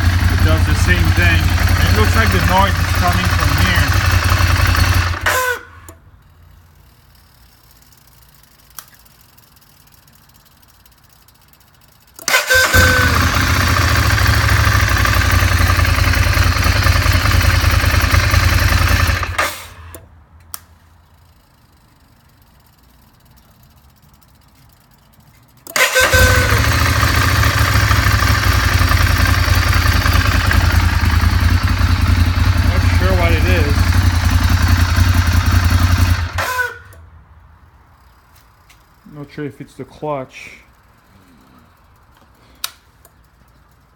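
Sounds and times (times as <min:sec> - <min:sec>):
motorcycle engine shutting off: 0:00.0 - 0:06.0, 0:12.1 - 0:20.0, 0:24.2 - 0:37.0.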